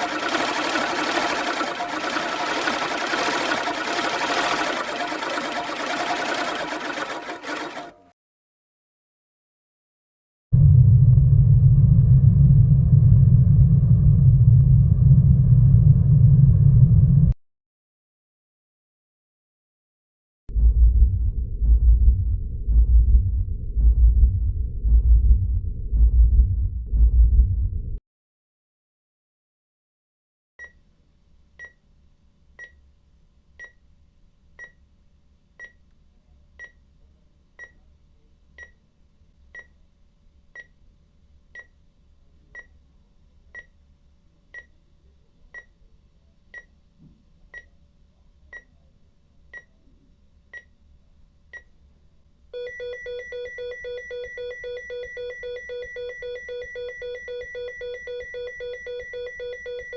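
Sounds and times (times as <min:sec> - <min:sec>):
electronic telephone ringer: 0:52.6 - 0:59.9.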